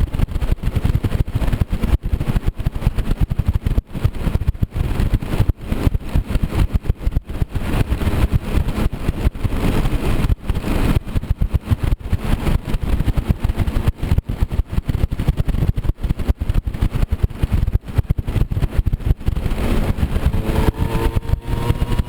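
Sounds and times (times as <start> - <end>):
scooter engine running: 0.0 - 22.0
buffeting on microphone: 3.4 - 22.0.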